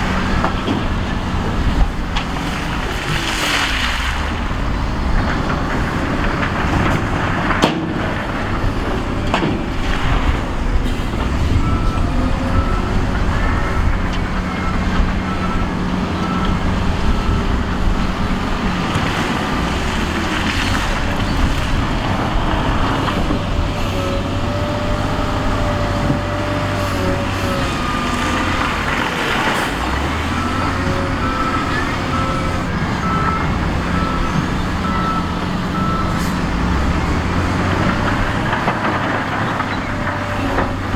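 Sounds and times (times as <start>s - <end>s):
heavy diesel machinery working: 0.0s - 40.9s
reversing alarm beeping: 30.3s - 36.7s.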